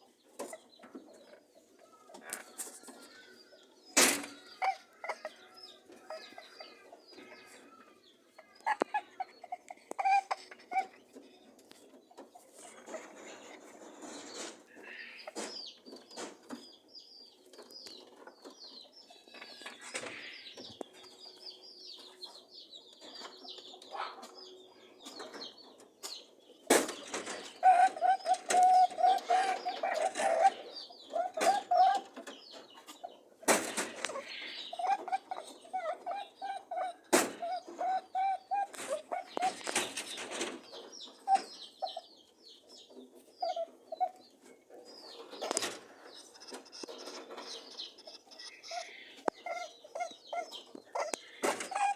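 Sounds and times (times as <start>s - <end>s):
rabbits honking: 1.4s - 11.3s, 26.6s - 51.9s
faint high chirping: 26.9s - 51.9s.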